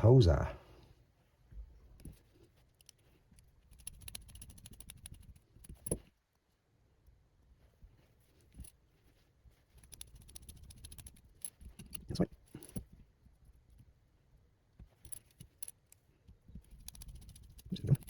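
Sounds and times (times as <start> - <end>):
screws clicking as driven: 3.7 - 6.0, 9.8 - 12.1, 16.7 - 18.0.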